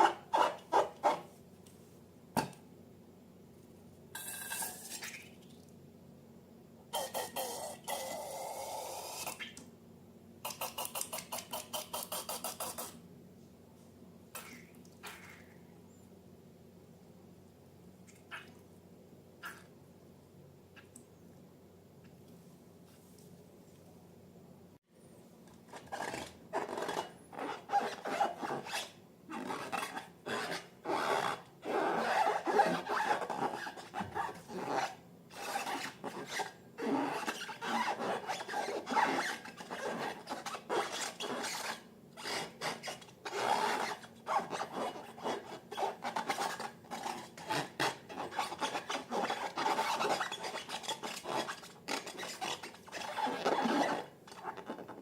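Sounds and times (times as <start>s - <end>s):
slime rubbing and scraping: 29.5s - 55.0s.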